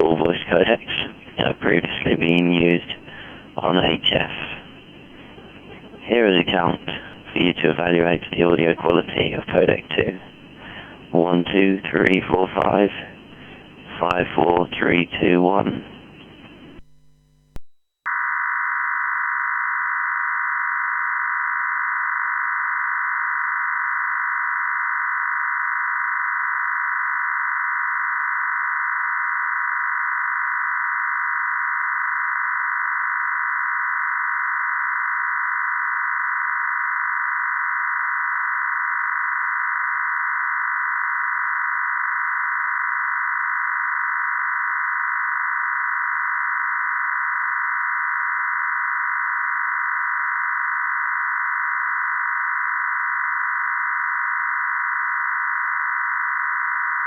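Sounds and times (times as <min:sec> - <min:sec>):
digital modem tones hum: 0:00.0 - 0:18.7.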